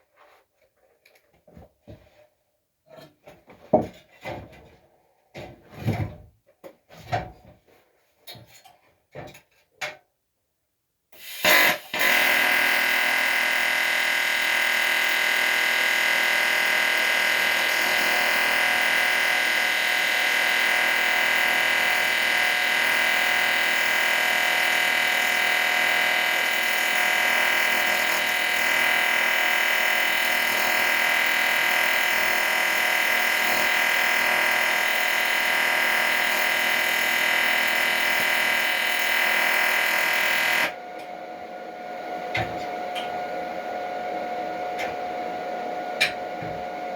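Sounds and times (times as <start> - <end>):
electric power tool whining: 11.2 - 40.8.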